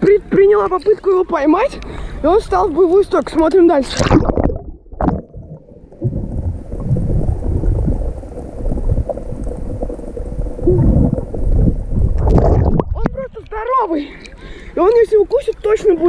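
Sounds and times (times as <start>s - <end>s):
underwater gurgling and rumbling: 3.9s - 13.4s.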